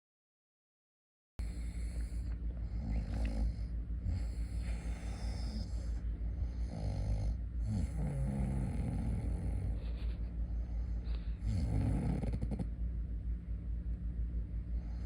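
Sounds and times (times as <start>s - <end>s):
person snoring: 1.4s - 9.8s, 11.3s - 12.7s
steady low rumble: 1.4s - 15.0s.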